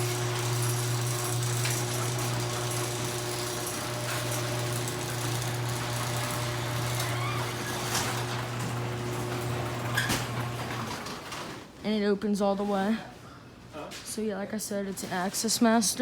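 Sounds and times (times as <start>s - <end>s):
garage door opener running: 0.0s - 11.7s.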